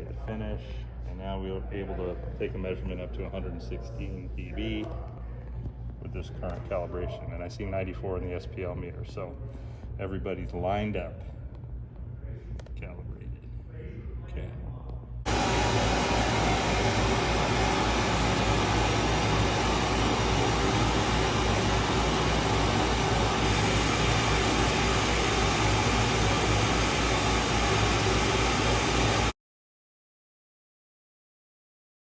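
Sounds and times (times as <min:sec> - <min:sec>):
hiss-like test noise from loudspeaker: 0:15.3 - 0:29.3.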